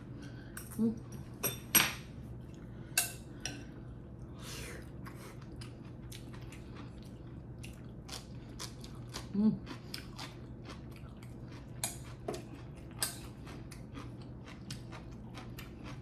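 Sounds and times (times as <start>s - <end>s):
soft eating clicks: 5.0s - 16.0s.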